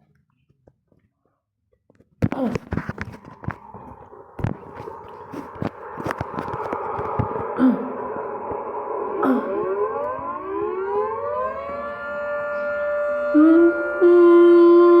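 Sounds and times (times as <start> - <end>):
tornado siren winding up: 2.9 - 15.0
rushing noise: 3.0 - 12.8.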